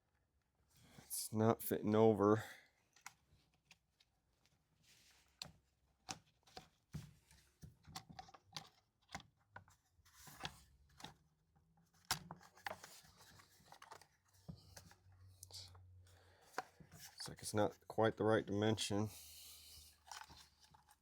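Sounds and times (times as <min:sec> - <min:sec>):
plastic clicks knocks and scrapes: 0:05.4 - 0:11.2, 0:11.8 - 0:15.0.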